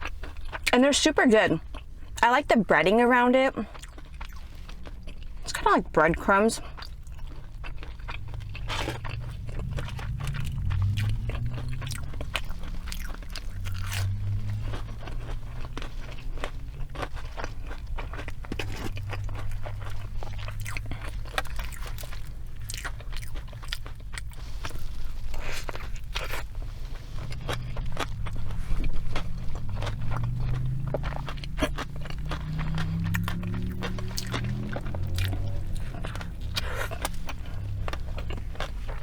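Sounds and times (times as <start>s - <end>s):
crisp chewing crunches: 0.0s - 2.4s, 3.2s - 39.0s
low steady hum: 0.0s - 39.0s.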